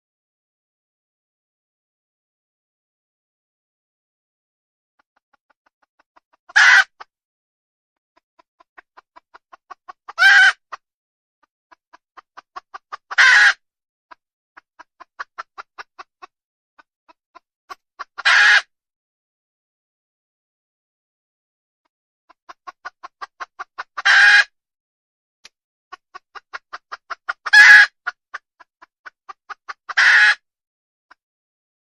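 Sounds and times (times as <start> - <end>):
hen clucking and squawking: 5.2 - 7.1, 8.2 - 10.8, 11.7 - 13.6, 14.6 - 16.3, 17.1 - 18.7, 22.3 - 24.6, 25.9 - 30.5.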